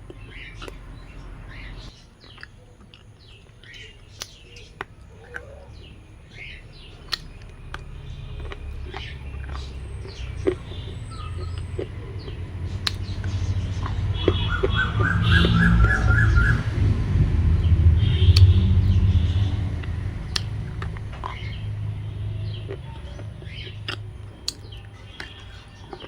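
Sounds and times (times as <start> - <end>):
low rumble: 9.4 - 24.3.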